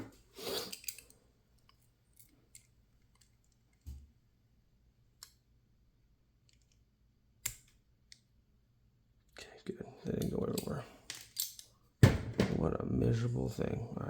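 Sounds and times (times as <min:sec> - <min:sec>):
small metal clicks of lock tool: 0:07.4 - 0:08.2.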